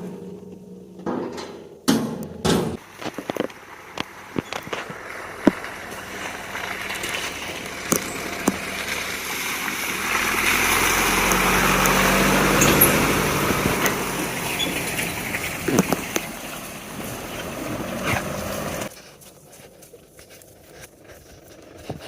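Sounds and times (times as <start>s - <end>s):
knocks and rattles: 0.0s - 10.0s, 11.2s - 16.6s
vehicle engine running: 2.8s - 19.0s.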